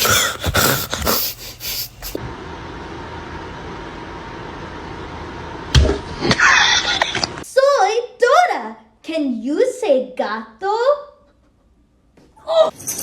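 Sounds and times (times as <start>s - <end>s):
cat hissing: 0.0s - 2.2s.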